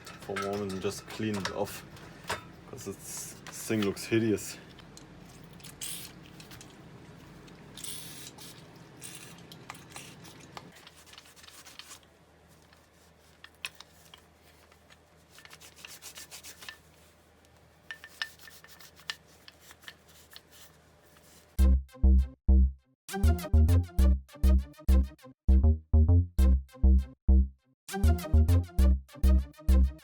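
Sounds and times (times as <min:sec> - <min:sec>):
scrubbing strokes: 0:10.1 - 0:17.3.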